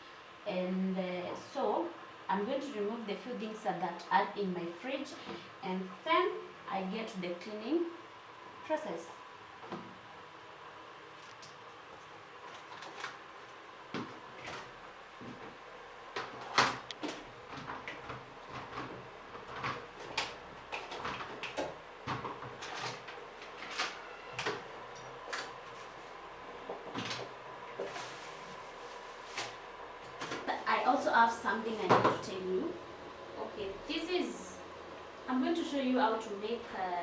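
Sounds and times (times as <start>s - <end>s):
containers clattering in a fridge: 13.9s - 28.6s, 29.2s - 30.6s.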